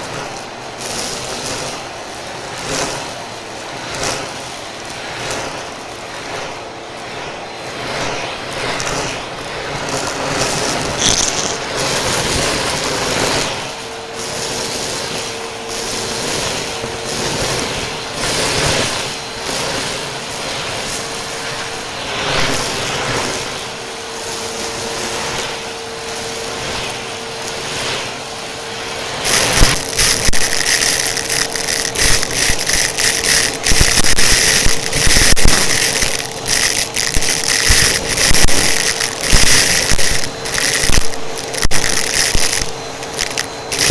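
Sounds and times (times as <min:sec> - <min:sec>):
vacuum cleaner running: 0:00.0 - 0:43.9
rapid clicks and rattles: 0:29.2 - 0:43.9.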